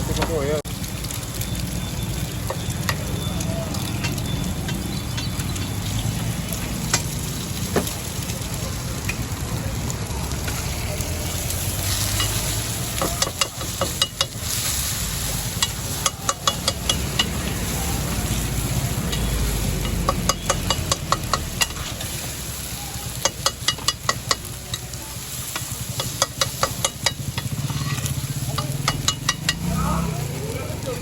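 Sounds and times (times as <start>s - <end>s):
frying sizzle: 0.0s - 31.0s
metal spatulas clacking on griddle: 11.9s - 14.6s, 15.5s - 17.6s, 19.1s - 22.2s, 23.1s - 24.9s, 25.5s - 29.7s.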